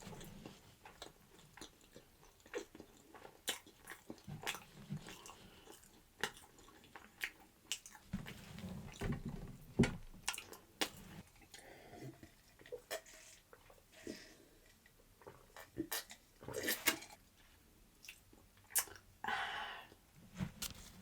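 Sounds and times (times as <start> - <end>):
person chewing food: 0.0 - 9.0, 18.0 - 19.0.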